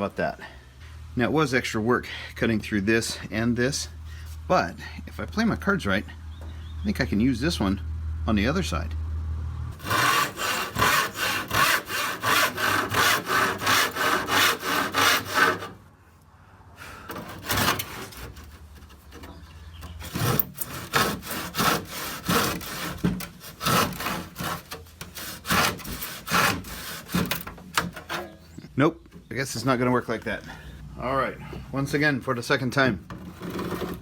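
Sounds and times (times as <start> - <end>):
handsaw cutting wood: 9.8 - 15.8, 17.0 - 28.3, 33.2 - 34.0.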